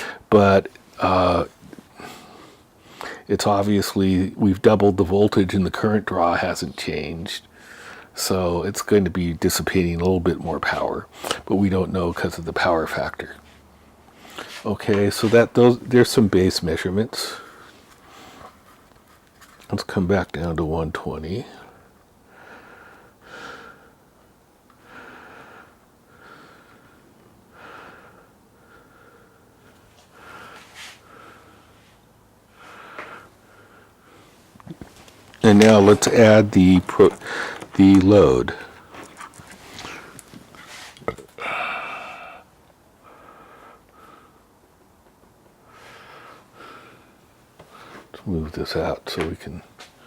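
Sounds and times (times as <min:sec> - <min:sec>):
person breathing: 0:00.0 - 0:00.3, 0:07.5 - 0:08.2, 0:21.5 - 0:24.0, 0:24.8 - 0:34.5, 0:35.7 - 0:37.8, 0:39.7 - 0:44.5, 0:45.6 - 0:48.1.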